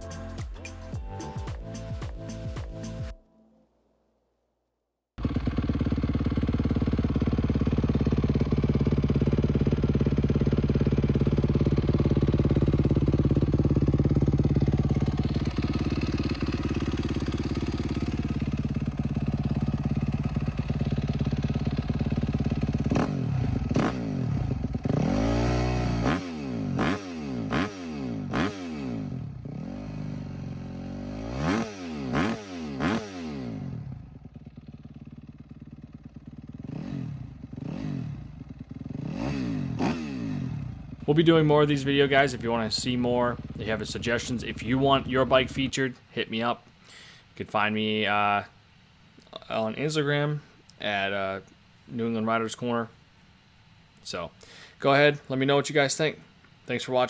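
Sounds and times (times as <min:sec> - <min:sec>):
motorcycle engine revving: 0:05.2 - 0:45.7.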